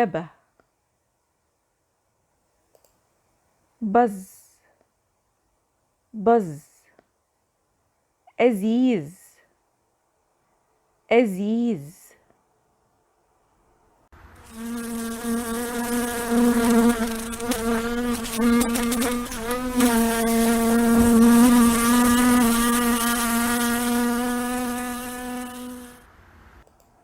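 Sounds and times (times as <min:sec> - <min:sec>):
fly buzzing: 0:14.4 - 0:26.1.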